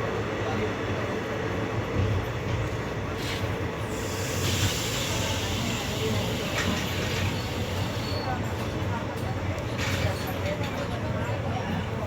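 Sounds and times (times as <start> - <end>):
train running rumble: 0.0 - 12.0
rushing hiss: 3.9 - 8.0.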